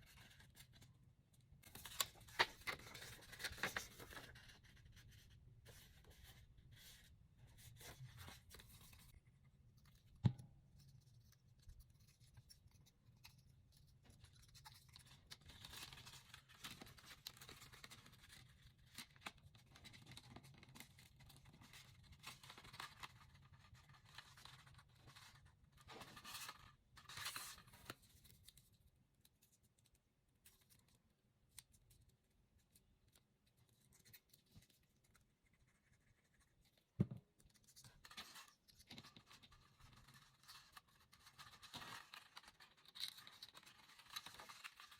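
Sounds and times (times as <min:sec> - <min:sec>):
paper rustling: 0:01.7 - 0:05.0, 0:37.8 - 0:44.9.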